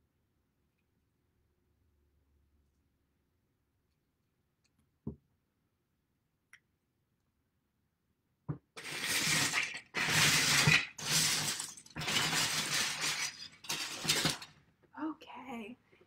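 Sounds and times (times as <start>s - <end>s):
plastic bricks clattering in a bin: 8.8s - 14.6s.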